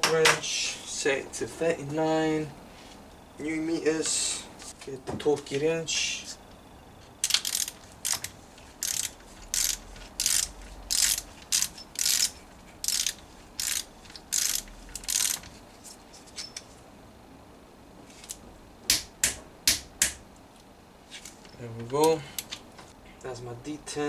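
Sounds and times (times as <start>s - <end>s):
torque wrench ratchet clicking: 7.2s - 15.5s.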